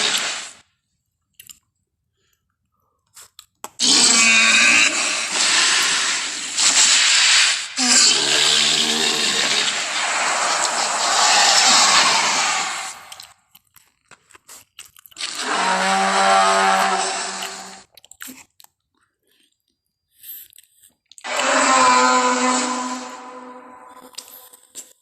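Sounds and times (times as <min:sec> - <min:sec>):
creature hissing roar: 0:00.0 - 0:00.5, 0:03.8 - 0:13.2, 0:15.2 - 0:17.8, 0:21.3 - 0:23.9
creature bellowing calls: 0:03.8 - 0:13.2, 0:15.2 - 0:17.8, 0:21.2 - 0:24.1.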